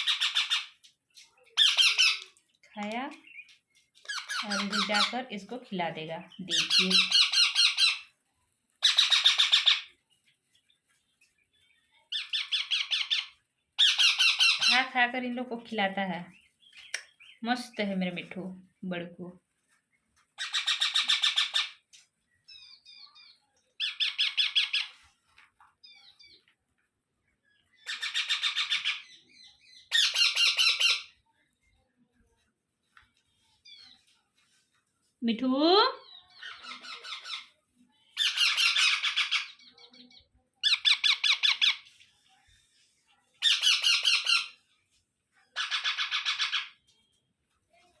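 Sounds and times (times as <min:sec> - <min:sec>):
parrots squawking: 0:00.0 - 0:00.8, 0:01.6 - 0:02.2, 0:04.1 - 0:05.2, 0:06.5 - 0:08.1, 0:08.8 - 0:09.9, 0:12.1 - 0:15.0, 0:20.4 - 0:21.8, 0:23.8 - 0:25.0, 0:27.8 - 0:29.1, 0:29.9 - 0:31.1, 0:36.4 - 0:37.5, 0:38.2 - 0:39.7, 0:40.6 - 0:41.9, 0:43.4 - 0:44.6, 0:45.6 - 0:46.8
parrots chirping softly: 0:00.0 - 0:05.6, 0:06.2 - 0:15.1, 0:16.2 - 0:18.8, 0:19.4 - 0:35.2, 0:36.0 - 0:48.0.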